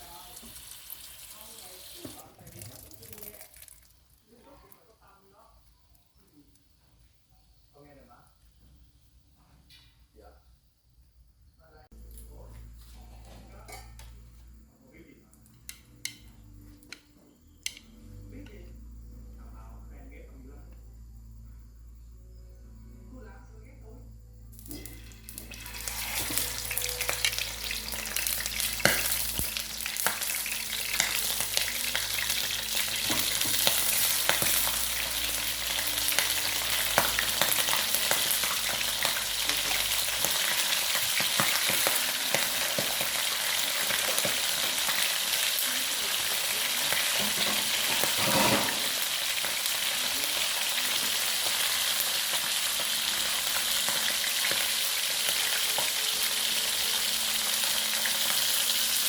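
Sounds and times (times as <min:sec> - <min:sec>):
chicken sizzling in hot oil: 0:00.0 - 0:04.2, 0:24.6 - 0:59.0.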